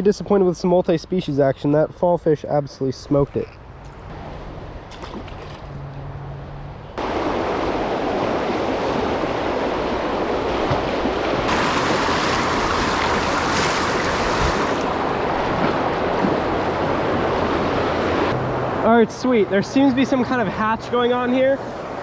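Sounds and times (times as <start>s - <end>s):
rushing stream water: 7.0s - 22.0s.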